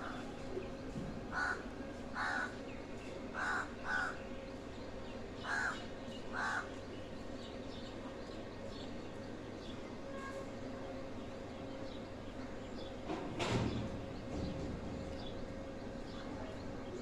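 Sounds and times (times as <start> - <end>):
crow cawing: 1.3 - 1.6, 2.2 - 2.6, 3.4 - 4.2, 5.4 - 6.7.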